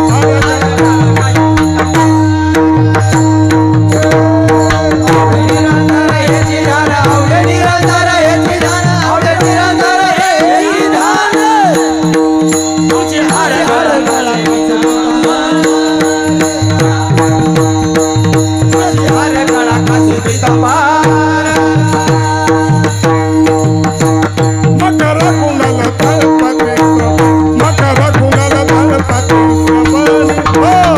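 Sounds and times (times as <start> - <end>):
hand drum beat: 0.0 - 30.9
harmonium drone: 0.0 - 30.9
man singing devotional phrases: 4.0 - 12.2, 12.8 - 18.0, 18.6 - 23.2, 24.7 - 30.9.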